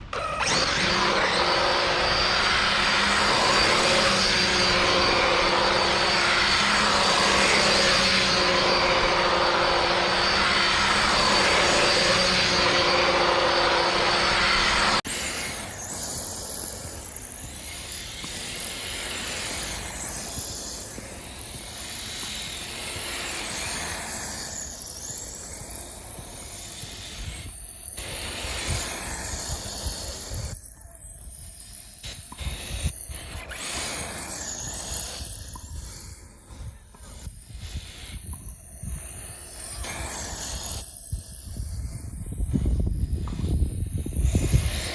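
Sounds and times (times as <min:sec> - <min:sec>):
rc car motor whine: 0:00.0 - 0:44.9.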